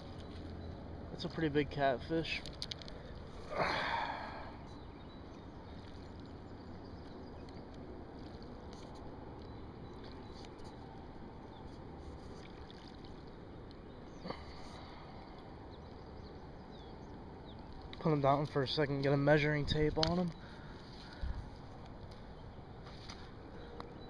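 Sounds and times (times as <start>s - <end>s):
river water lapping at shoreline: 0.0s - 24.0s
water splashing: 11.9s - 15.4s.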